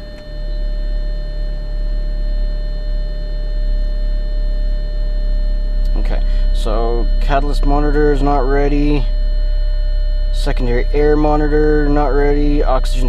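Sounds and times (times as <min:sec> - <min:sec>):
car engine idling: 0:00.0 - 0:02.1, 0:05.5 - 0:13.0
high-pitched whine: 0:00.0 - 0:13.0.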